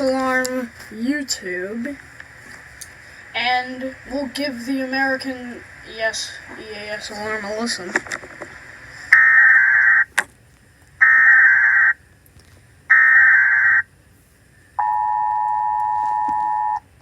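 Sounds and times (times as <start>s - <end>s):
buzzy digital data bursts: 0.0s - 10.1s, 11.0s - 12.0s
two-tone alert signal: 14.8s - 16.8s.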